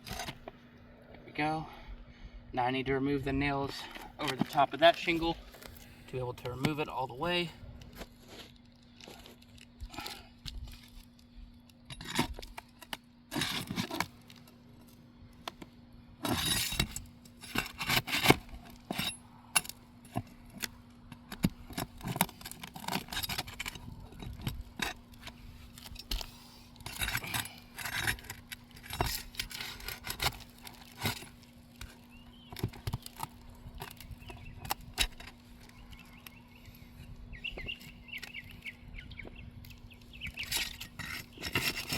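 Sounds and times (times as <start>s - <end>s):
faint steady hum: 0.0s - 41.9s
pry bar scraping on shingles: 3.7s - 38.7s, 39.3s - 41.9s.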